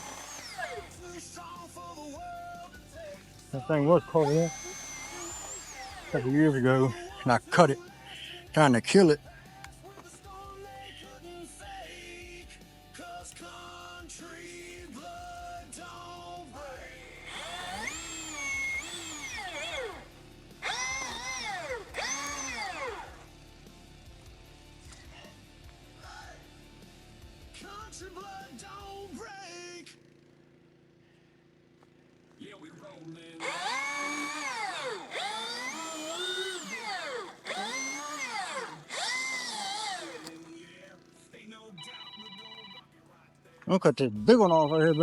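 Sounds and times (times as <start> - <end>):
electric chainsaw motor whining: 0.0 - 7.8, 14.6 - 26.3, 32.9 - 41.3.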